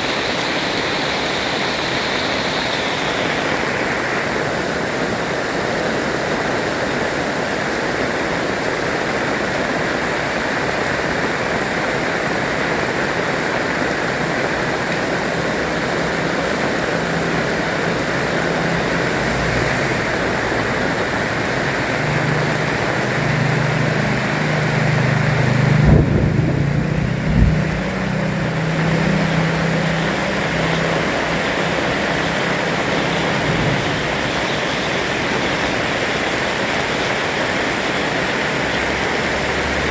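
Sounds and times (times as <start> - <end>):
heavy rain pouring: 0.0 - 39.9
low droning hum: 24.8 - 31.8.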